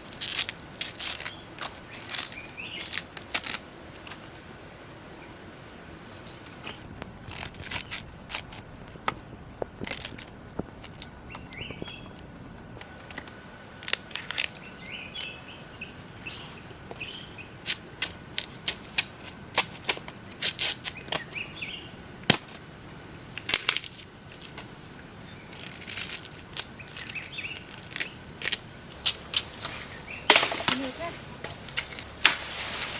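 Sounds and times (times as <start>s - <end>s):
bamboo shoots snapping: 0.0s - 3.6s, 7.2s - 8.6s, 9.8s - 12.2s, 12.8s - 15.4s, 25.5s - 32.9s
faint bird chirps: 29.0s - 32.2s.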